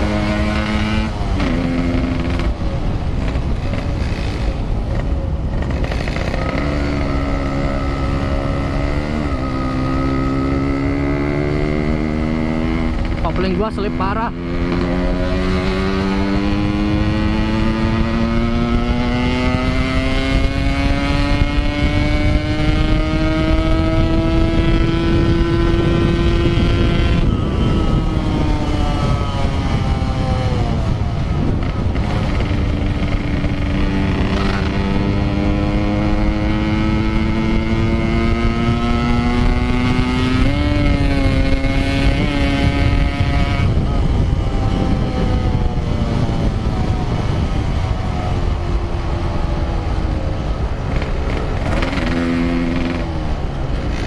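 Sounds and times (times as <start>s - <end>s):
motorcycle engine revving: 0.0s - 54.0s
wind rushing over microphone: 0.0s - 54.0s
rider speaking: 13.1s - 15.3s.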